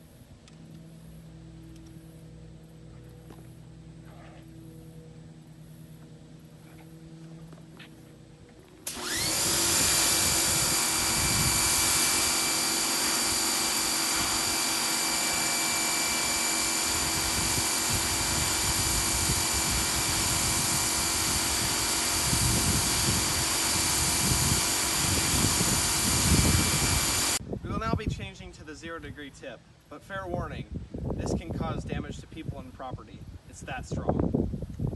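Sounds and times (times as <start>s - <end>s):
pressure washer motor whine: 0.0s - 27.4s
water jet hissing: 8.9s - 27.4s.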